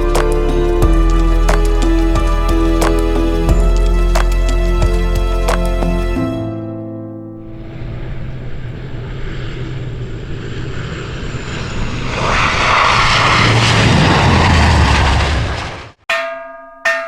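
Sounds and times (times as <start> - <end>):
aircraft engines droning: 0.0 - 6.6, 7.3 - 16.0.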